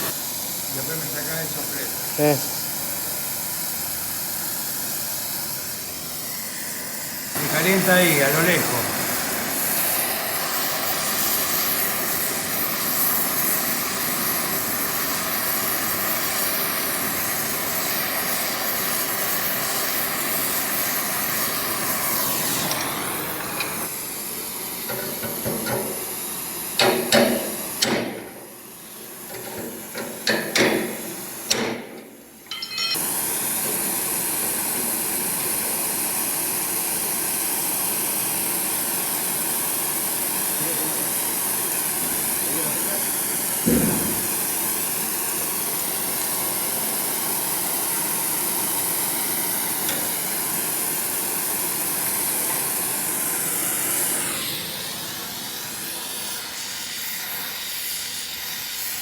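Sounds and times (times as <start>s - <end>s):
torch hissing: 0.0s - 59.0s
sharp metal knocks: 31.5s - 33.0s.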